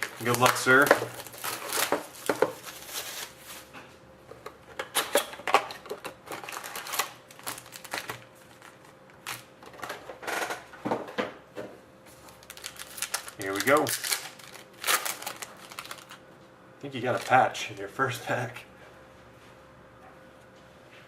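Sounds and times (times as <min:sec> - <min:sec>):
foil wrapper rustling: 0:00.0 - 0:03.7, 0:06.2 - 0:09.5, 0:12.1 - 0:16.2, 0:17.0 - 0:18.2.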